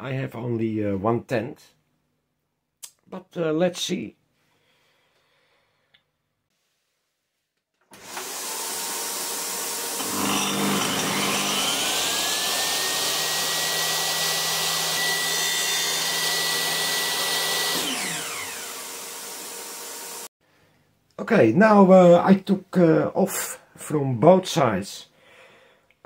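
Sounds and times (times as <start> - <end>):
table saw motor whining: 7.9 - 20.3.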